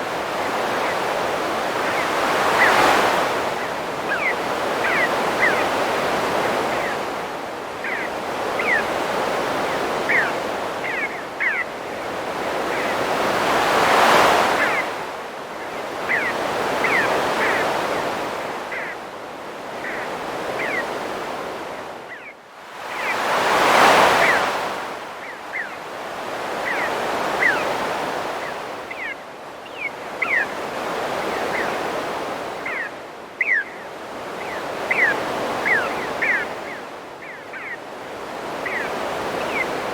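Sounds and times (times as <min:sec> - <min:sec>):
birds chirping: 0:00.0 - 0:19.0, 0:19.6 - 0:21.3, 0:22.0 - 0:39.9
ocean surf breaking: 0:22.8 - 0:25.0.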